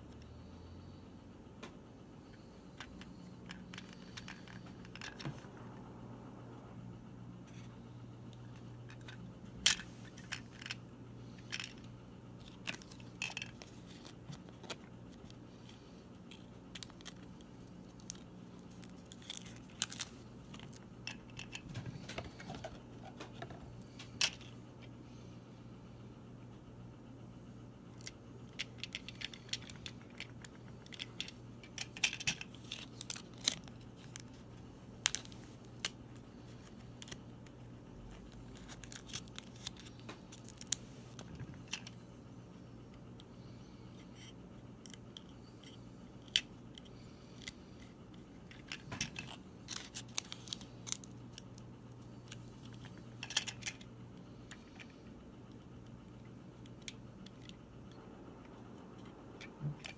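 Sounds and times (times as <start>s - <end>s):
steady low hum: 0.0s - 59.9s
plastic parts clicking and snipping: 2.8s - 5.5s, 11.4s - 24.5s, 27.9s - 42.0s, 44.2s - 53.9s.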